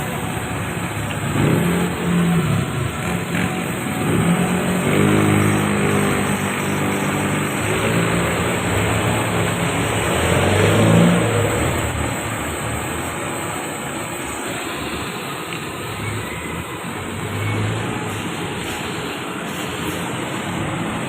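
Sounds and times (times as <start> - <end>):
vehicle engine revving: 0.0 - 15.1.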